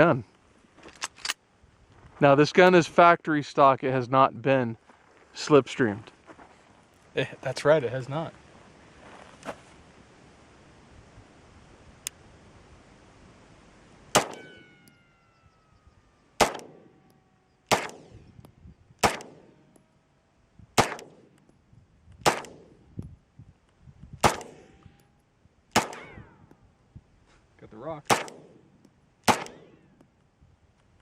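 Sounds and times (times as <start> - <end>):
pistol shots: 14.1 - 14.8, 16.4 - 17.0, 17.7 - 18.3, 19.0 - 19.6, 20.8 - 21.4, 22.2 - 22.8, 24.2 - 24.8, 25.7 - 26.3, 28.1 - 30.0
faint ringing tone: 14.4 - 20.5.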